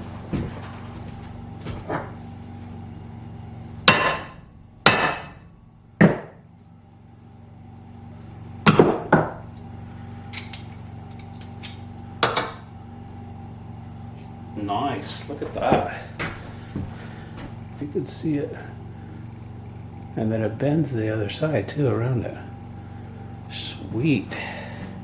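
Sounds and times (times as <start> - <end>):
sledgehammer striking metal: 3.8 - 6.4.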